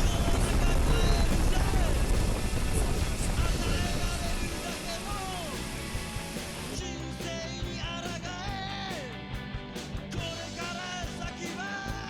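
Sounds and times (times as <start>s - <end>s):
rock music with singing: 0.0s - 12.0s.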